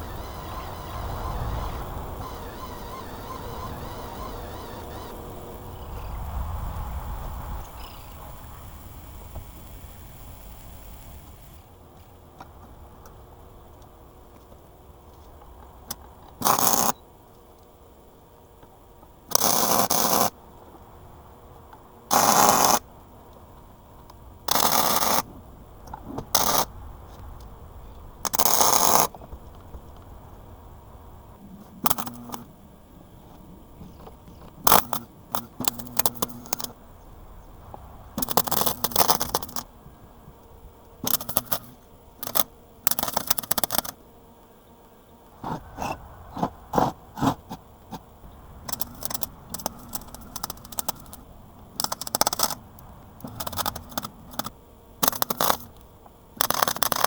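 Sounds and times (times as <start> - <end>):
crackling and clicks: 0.0 - 11.7, 41.1 - 44.0, 46.4 - 51.2, 51.8 - 57.0
welding bursts: 0.0 - 11.8, 34.6 - 36.8, 38.2 - 39.7, 41.0 - 44.0, 48.6 - 51.2, 51.8 - 55.7, 56.4 - 57.0.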